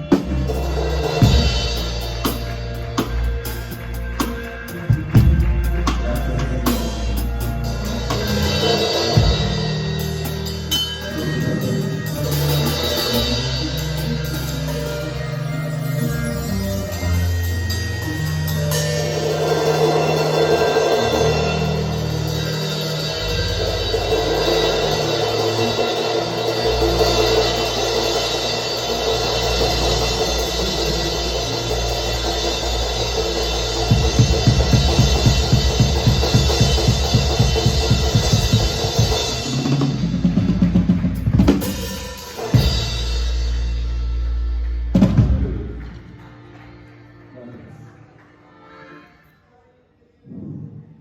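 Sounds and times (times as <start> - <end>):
bass drum beat: 0.0 - 14.8, 29.0 - 46.1
live band music: 0.0 - 49.6
drum kit hits: 26.6 - 46.0.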